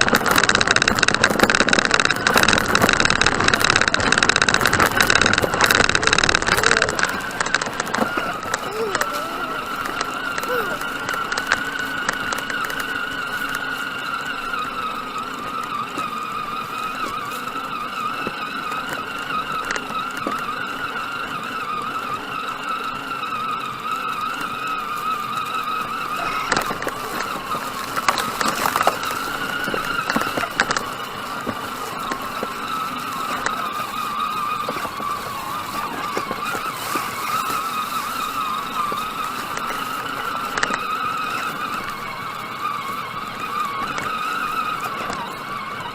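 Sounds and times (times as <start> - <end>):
small electric motor whining: 0.0 - 45.9.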